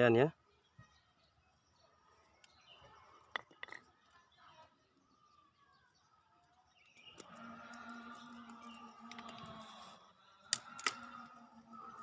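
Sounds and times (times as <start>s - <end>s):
faint bird chirps: 0.0s - 12.0s.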